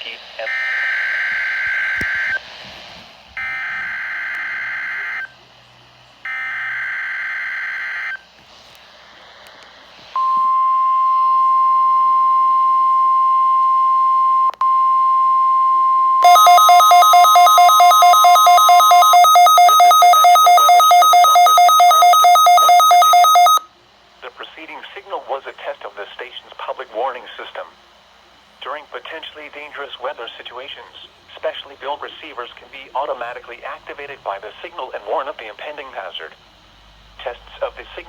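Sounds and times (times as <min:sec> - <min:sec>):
steady warning alarm tone: 0:00.4 - 0:02.4, 0:03.4 - 0:05.4, 0:06.3 - 0:08.2, 0:10.2 - 0:23.7
rapidly pulsing two-pitch beep: 0:10.2 - 0:23.6
raspy digital data tones: 0:16.2 - 0:23.6.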